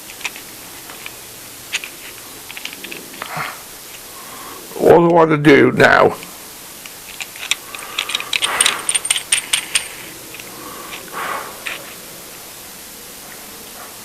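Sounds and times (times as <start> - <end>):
metal tools clicking and rattling: 0.1 - 3.3, 7.1 - 11.8.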